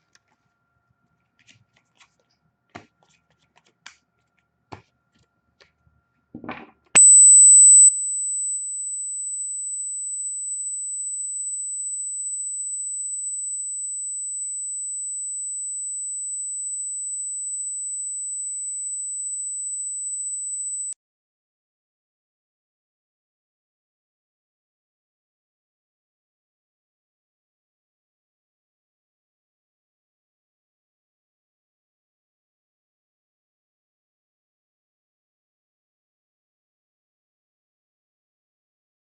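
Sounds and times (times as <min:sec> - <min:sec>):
high-pitched electronic tone: 0:07.0 - 0:21.0.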